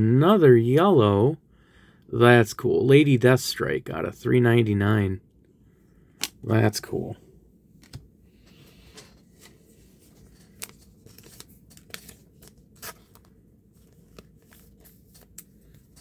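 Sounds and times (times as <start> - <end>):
cards clicking and sliding: 8.7 - 16.0.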